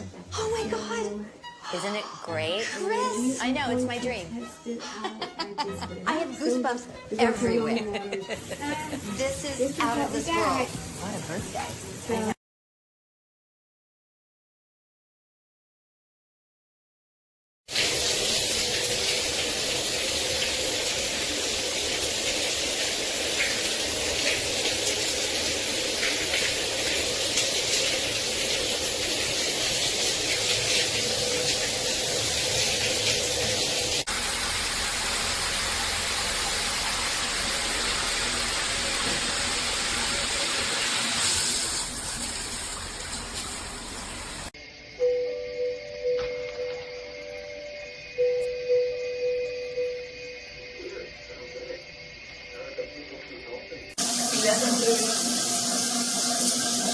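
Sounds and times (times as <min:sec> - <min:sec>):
shower head spraying water: 0:07.9 - 0:12.4, 0:17.7 - 0:44.5, 0:54.0 - 0:56.9.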